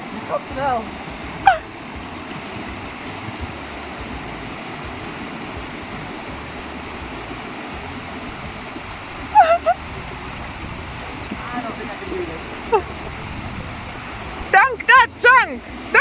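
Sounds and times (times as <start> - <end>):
waterfall rushing water: 0.0 - 16.0.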